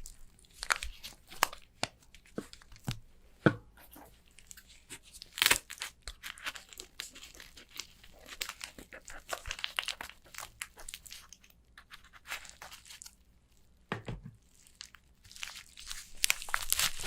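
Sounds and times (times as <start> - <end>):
sticky slime pops and crackles: 14.8 - 17.0.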